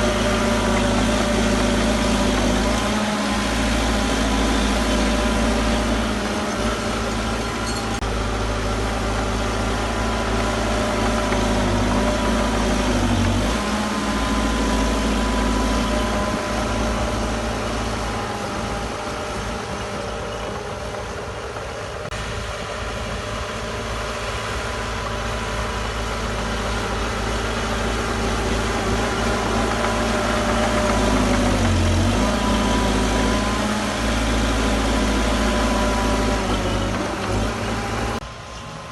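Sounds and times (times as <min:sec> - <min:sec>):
heavy machinery diesel engine: 0:00.0 - 0:38.9.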